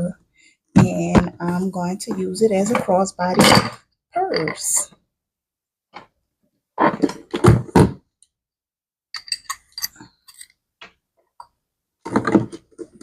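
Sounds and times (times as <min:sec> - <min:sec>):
metal buckle clinking: 0:09.2 - 0:10.5.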